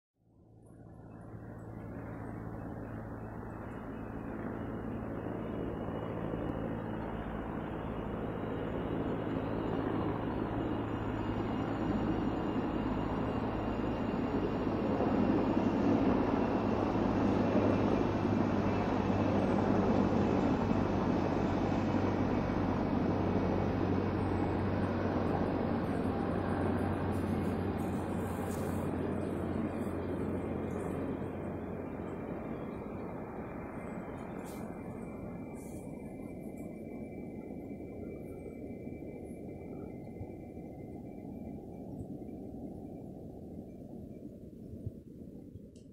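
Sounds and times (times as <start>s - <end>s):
faint high whine: 0.2s - 45.9s
helicopter drone: 0.2s - 45.9s.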